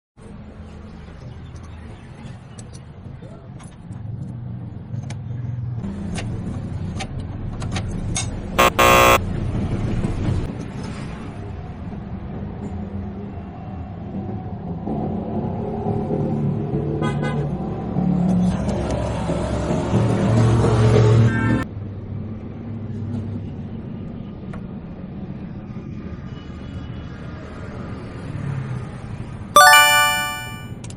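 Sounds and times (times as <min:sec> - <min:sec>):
vehicle horn: 0:08.6 - 0:09.2.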